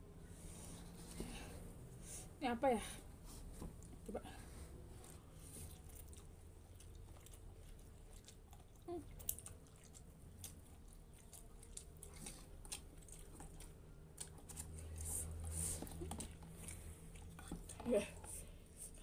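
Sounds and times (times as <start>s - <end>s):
faint low hum: 0.0s - 19.0s
person chewing noodles: 3.8s - 19.0s.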